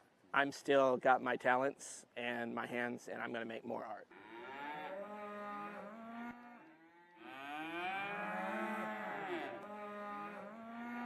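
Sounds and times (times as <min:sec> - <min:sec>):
cattle mooing: 0:04.1 - 0:11.0.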